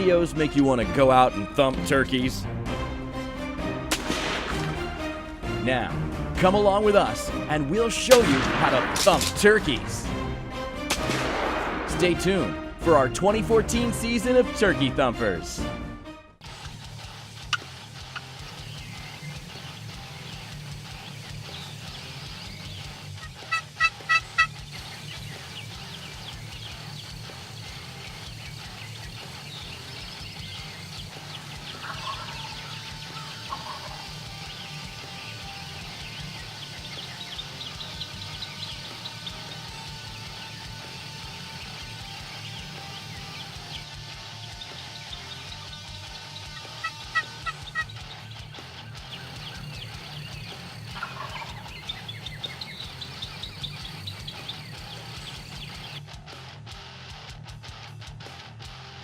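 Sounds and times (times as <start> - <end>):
songbirds chirping: 0.0 - 3.8, 4.6 - 10.9, 17.3 - 56.0
turkey gobbling: 22.4 - 25.5, 30.9 - 35.3, 46.4 - 56.0.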